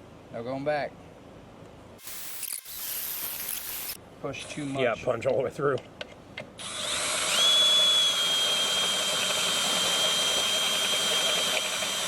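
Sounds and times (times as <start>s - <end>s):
power drill drilling metal: 2.0s - 4.0s, 6.6s - 12.0s.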